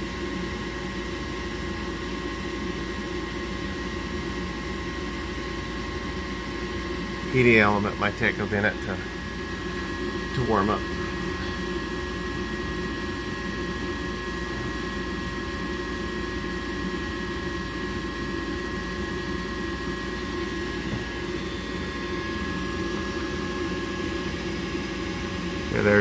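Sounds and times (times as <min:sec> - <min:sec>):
furnace motor humming: 0:00.0 - 0:26.0
thin steady whine: 0:00.0 - 0:26.0.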